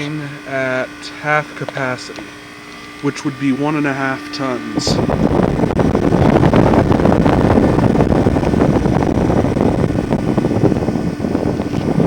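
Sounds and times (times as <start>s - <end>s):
compressor hum: 0.0s - 12.0s
fan rushing: 0.0s - 12.0s.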